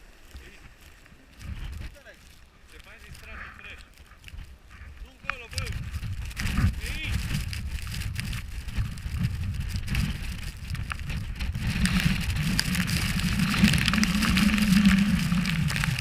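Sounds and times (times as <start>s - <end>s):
wind on microphone: 0.0s - 16.0s
snowboard sliding over snow: 5.0s - 16.0s.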